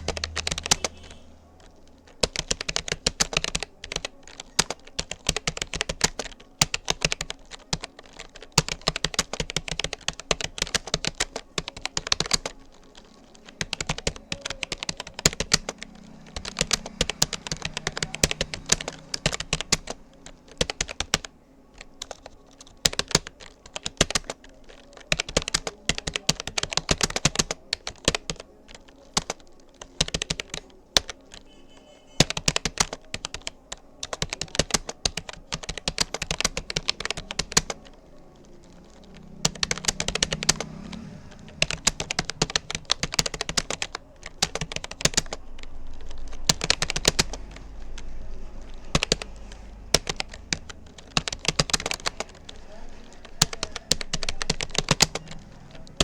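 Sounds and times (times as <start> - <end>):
keyboard key clicks: 32.2 - 56.0.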